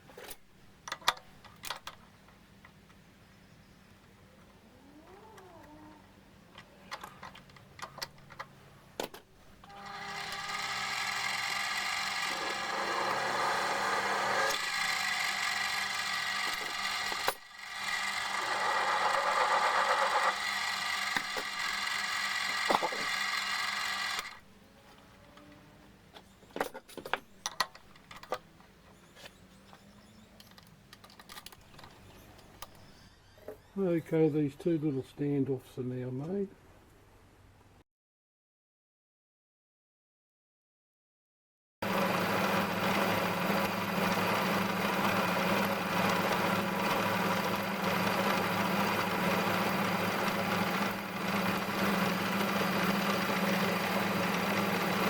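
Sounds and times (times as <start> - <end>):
small lathe whirring: 9.7 - 24.4, 41.8 - 55.0
metal parts clicking and knocking: 26.5 - 28.5, 30.4 - 32.8.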